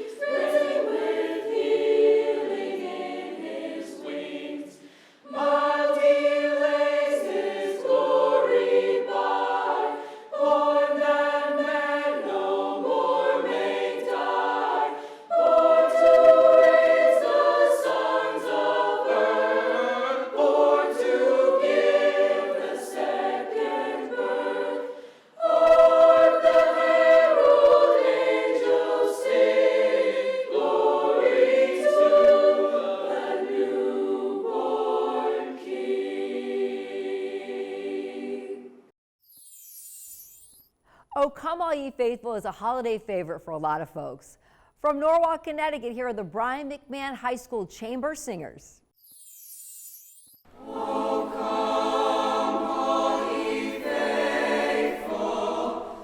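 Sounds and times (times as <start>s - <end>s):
choir singing in parts: 0.0s - 38.9s, 50.5s - 56.0s.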